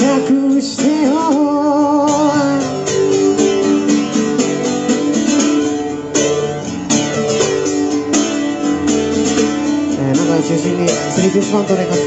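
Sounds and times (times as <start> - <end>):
guitar: 0.0 - 12.0
band playing instrumental: 3.5 - 12.0.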